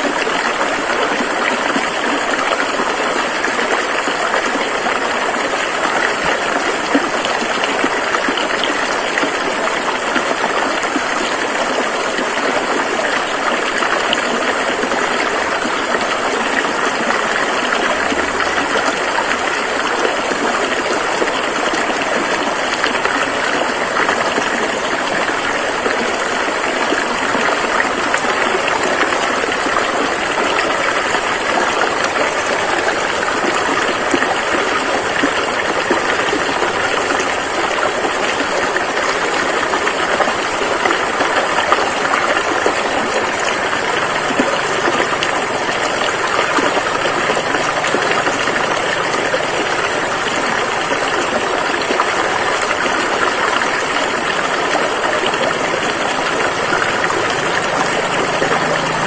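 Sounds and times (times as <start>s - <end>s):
river water rushing over rocks: 0.0s - 59.0s.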